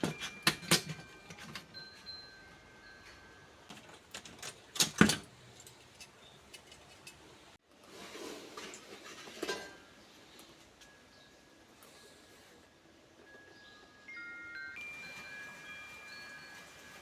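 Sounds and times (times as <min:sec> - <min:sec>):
metal scraping and knocking: 0:00.0 - 0:02.2.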